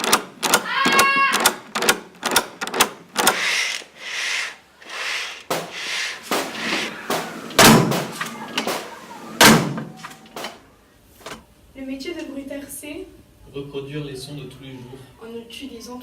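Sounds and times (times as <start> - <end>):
sharp clicks: 0.0 - 3.8
loud heavy bangs: 5.5 - 10.6.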